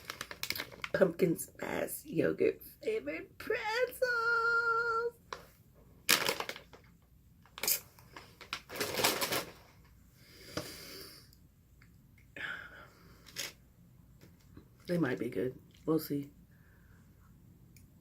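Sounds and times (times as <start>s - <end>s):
plastic snack bag crinkling: 0.0s - 1.2s, 5.3s - 9.8s.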